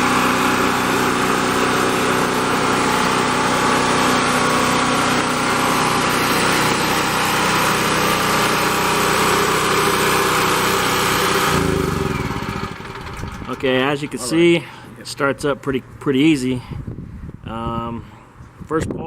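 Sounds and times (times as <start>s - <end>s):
generator engine running: 0.0s - 15.1s.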